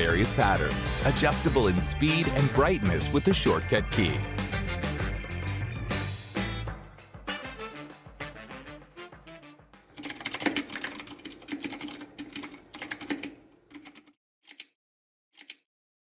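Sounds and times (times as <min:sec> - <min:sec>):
background music: 0:00.0 - 0:10.9
fast typing on mechanical keyboard: 0:10.0 - 0:14.6.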